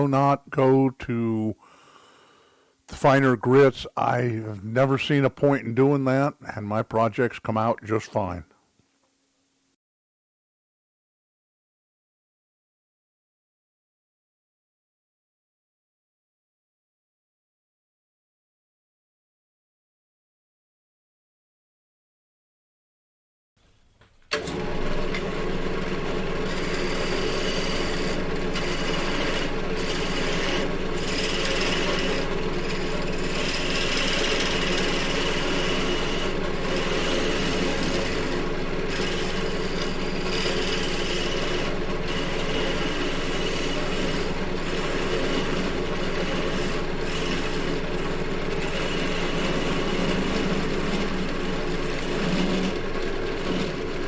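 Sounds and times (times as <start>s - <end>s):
lathe motor hum: 24.4s - 54.0s
sandpaper hissing on turning wood: 26.6s - 47.6s.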